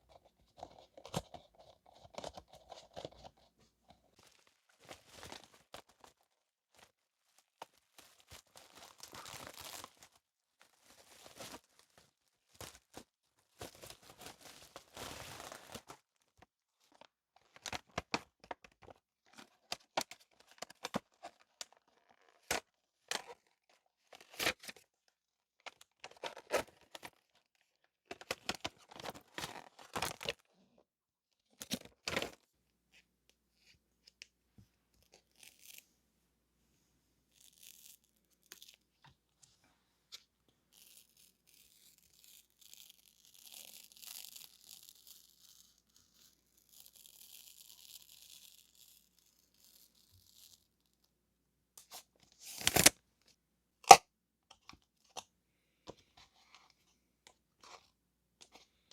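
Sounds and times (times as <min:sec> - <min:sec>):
paper wrapping being unwrapped: 0:01.6 - 0:16.0.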